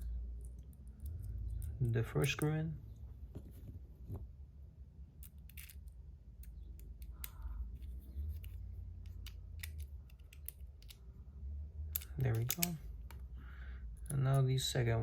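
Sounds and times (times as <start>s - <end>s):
small metal clicks and taps: 11.9s - 13.2s.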